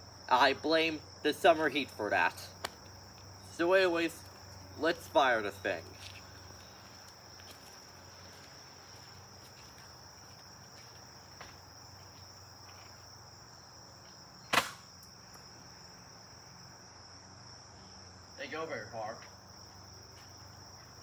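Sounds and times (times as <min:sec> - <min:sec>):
crickets chirring: 0:00.0 - 0:21.0
toy dart blaster pop: 0:14.5 - 0:15.0.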